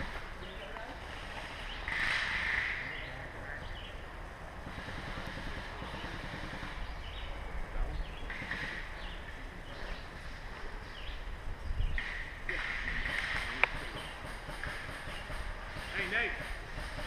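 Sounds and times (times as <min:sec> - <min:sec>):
birds chirping: 0:00.0 - 0:17.0
wind rumble on microphone: 0:02.8 - 0:15.6.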